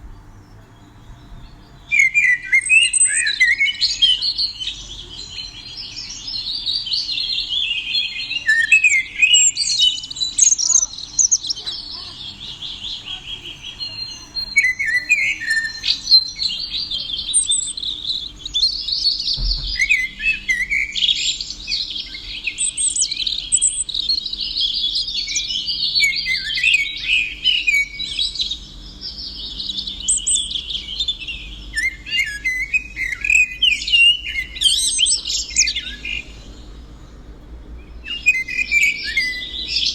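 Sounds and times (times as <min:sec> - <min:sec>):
songbird chirping and trilling: 0:00.0 - 0:39.9
low thump: 0:19.3 - 0:19.9.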